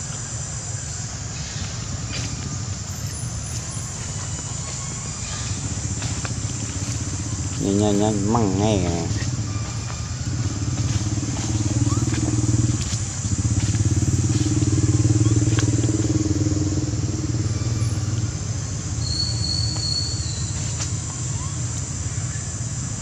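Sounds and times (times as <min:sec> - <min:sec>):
motorcycle engine running: 0:00.3 - 0:23.0
high-pitched whistle-like tone: 0:19.0 - 0:20.5.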